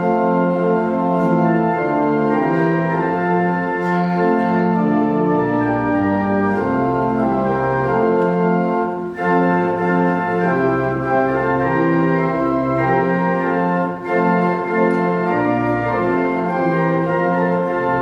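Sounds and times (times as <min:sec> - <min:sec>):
organ playing held chords: 0:00.0 - 0:18.0.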